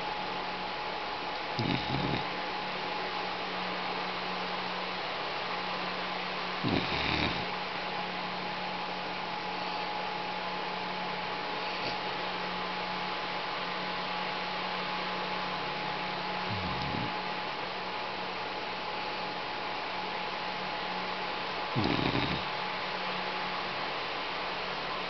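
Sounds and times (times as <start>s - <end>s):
steady hum: 0.0s - 25.0s
pet snoring: 1.5s - 2.4s, 6.6s - 7.5s, 11.6s - 12.0s, 16.4s - 17.2s, 21.7s - 22.6s.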